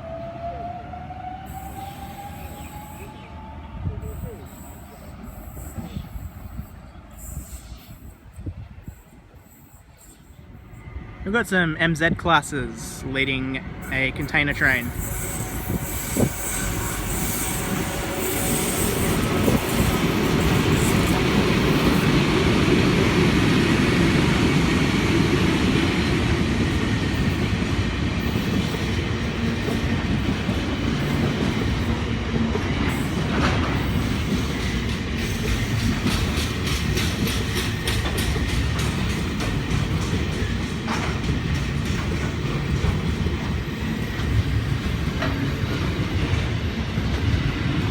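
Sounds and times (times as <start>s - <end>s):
freight train wagons rumbling: 3.9s - 47.9s
wheels clattering over rail joints: 28.3s - 47.4s.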